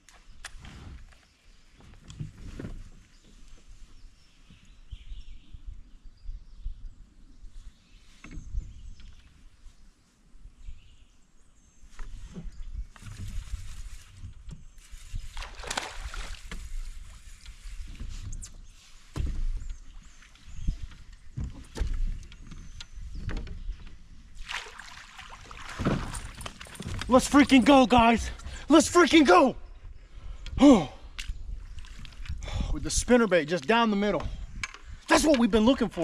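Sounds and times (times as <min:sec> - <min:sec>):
water swish: 0:15.2 - 0:18.0, 0:24.4 - 0:27.7.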